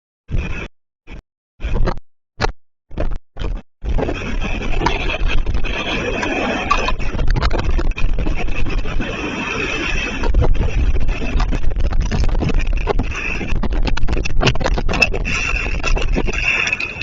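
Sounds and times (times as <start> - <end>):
storm wind buffeting microphone: 3.8 - 17.0.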